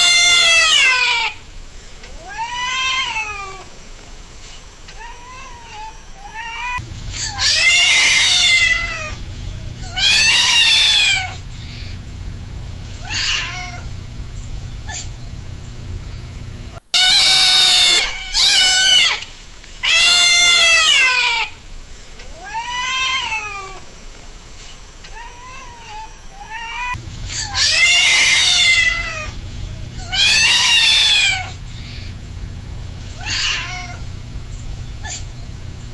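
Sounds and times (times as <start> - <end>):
cat screaming: 0.0 - 1.4, 2.2 - 3.7, 5.0 - 11.4, 13.0 - 13.9, 16.9 - 21.6, 22.4 - 23.8, 25.2 - 32.1, 33.1 - 34.2, 35.0 - 35.3.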